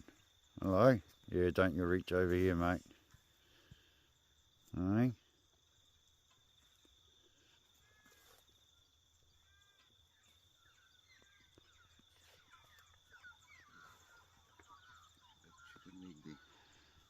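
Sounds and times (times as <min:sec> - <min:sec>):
small birds chirping: 0:00.0 - 0:17.0
high-pitched insect trill: 0:04.1 - 0:17.0.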